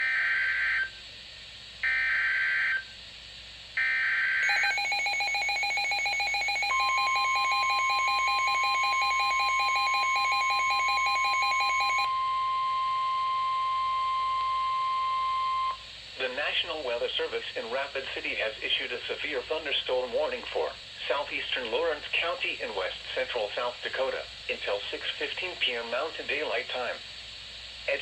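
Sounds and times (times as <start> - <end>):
steady single-pitched alarm tone: 3.8 - 15.8
screechy data bursts: 4.4 - 12.1.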